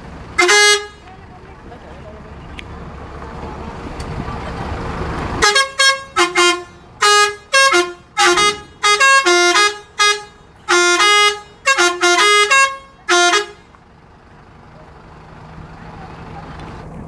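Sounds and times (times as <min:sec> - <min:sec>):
bus horn playing melody: 0:00.2 - 0:01.3, 0:05.4 - 0:13.8.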